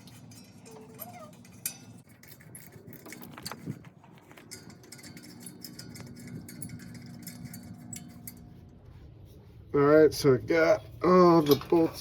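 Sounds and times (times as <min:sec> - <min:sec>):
faint metallic clinks and taps: 0:00.0 - 0:08.6.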